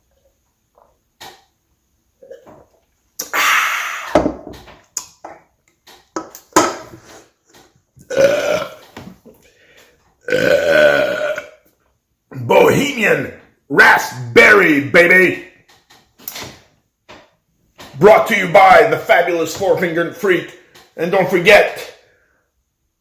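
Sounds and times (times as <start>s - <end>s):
man burping loudly: 2.2s - 4.2s, 8.0s - 9.0s, 10.2s - 11.6s.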